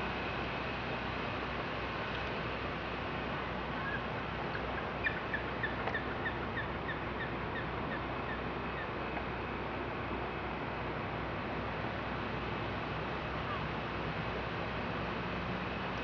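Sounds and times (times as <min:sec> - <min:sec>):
steady background hiss: 0:00.0 - 0:16.0.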